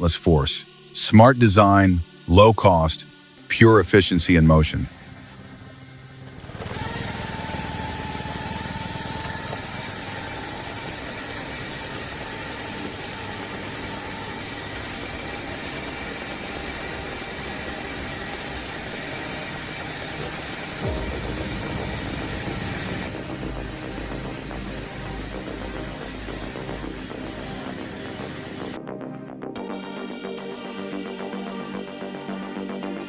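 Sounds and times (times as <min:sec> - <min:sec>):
thin whine: 0:00.0 - 0:28.8
firewood processor engine running: 0:05.0 - 0:28.8
tone sweeping down: 0:20.8 - 0:26.3.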